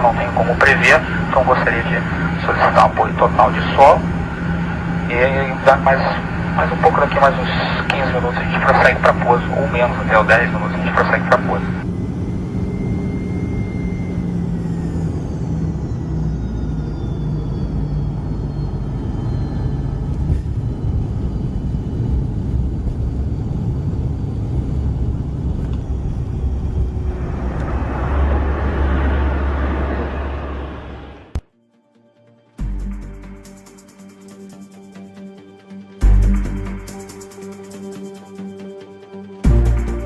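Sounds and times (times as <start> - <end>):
faint high whine: 0.0 - 31.4
aircraft engine and airflow rumble: 0.0 - 31.5, 32.6 - 40.0
rushing noise: 25.8 - 31.4.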